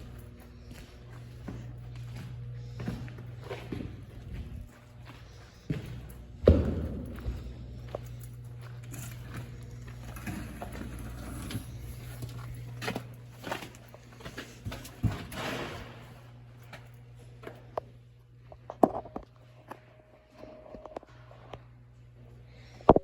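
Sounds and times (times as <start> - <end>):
knocks and scuffs: 0.0 - 10.0.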